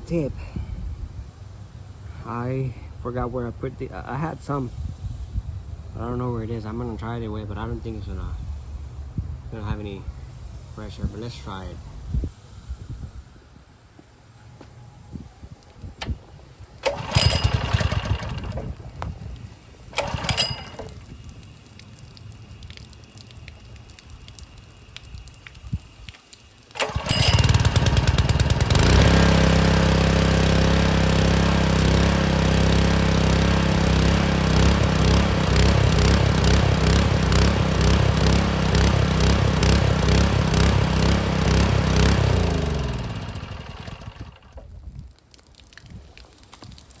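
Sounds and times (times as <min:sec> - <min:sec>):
engine pull-start attempts: 0:16.8 - 0:19.1, 0:19.9 - 0:21.1, 0:26.7 - 0:44.6
engine running steadily: 0:16.8 - 0:25.6, 0:26.7 - 0:44.6.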